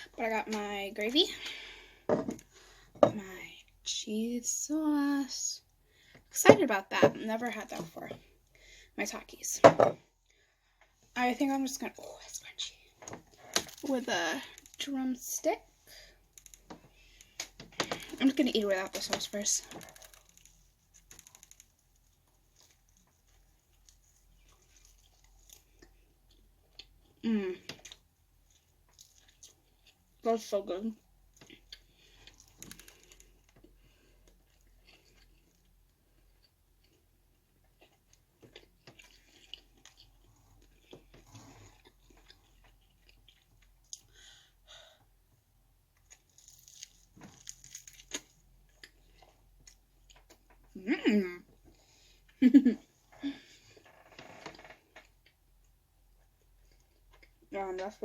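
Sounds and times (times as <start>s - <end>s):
chewing crispy chicken: 19.5s - 30.2s, 31.3s - 44.3s, 46.0s - 50.7s.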